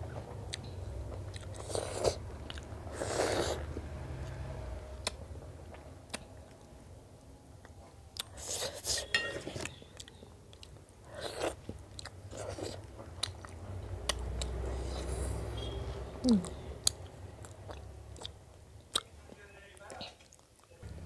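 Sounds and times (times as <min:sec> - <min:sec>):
person chewing food: 0:00.0 - 0:06.7, 0:07.6 - 0:20.7
sharp mouth clicks: 0:16.2 - 0:17.0.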